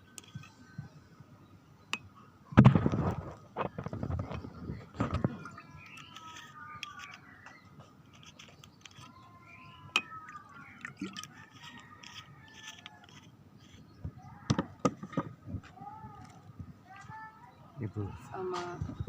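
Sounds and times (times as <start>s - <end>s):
faint indistinct voices: 3.4s - 19.0s.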